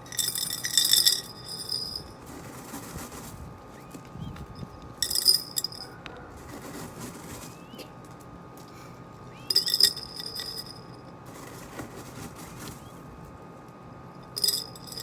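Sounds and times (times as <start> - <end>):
glass jar clinking: 0.1 - 2.2, 5.0 - 5.9, 9.5 - 10.9, 14.3 - 15.0.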